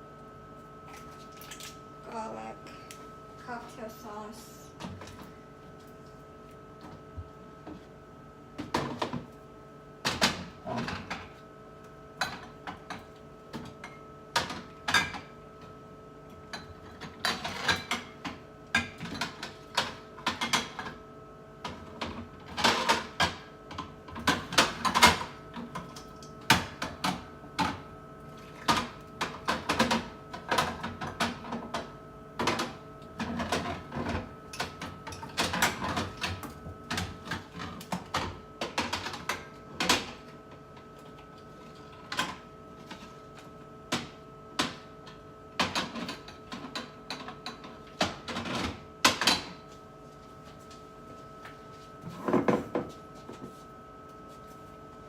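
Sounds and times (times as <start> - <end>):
faint steady hum: 0.0 - 55.0
jars and bottles clattering on shelves: 52.1 - 53.0.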